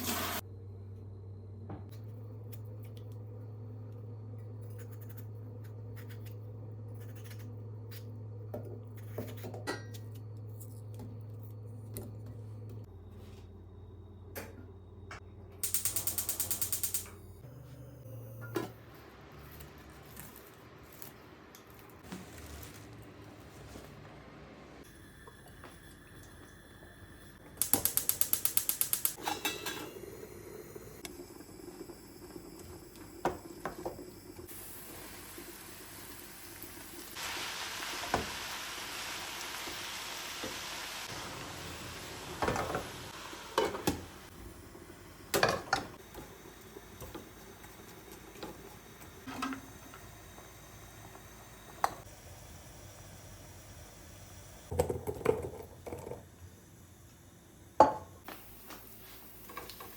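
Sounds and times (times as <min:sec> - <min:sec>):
pots and utensils clattering: 0:29.2 - 0:30.0.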